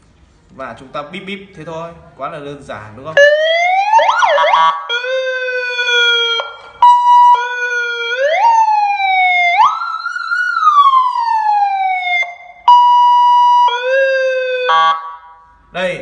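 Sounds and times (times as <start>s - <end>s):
electronic siren switching tones: 3.2s - 15.6s.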